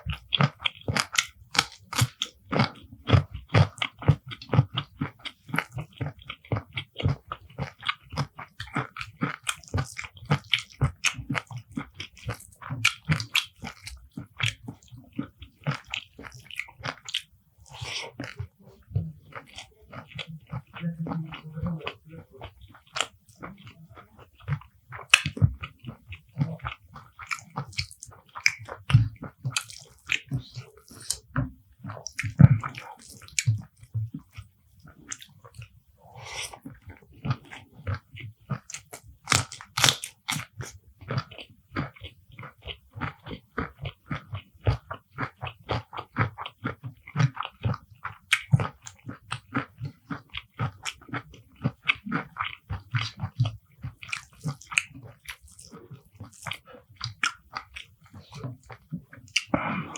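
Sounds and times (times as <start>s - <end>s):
crunching and wet chewing: 0.0s - 59.9s
mouth smacks: 58.1s - 59.9s.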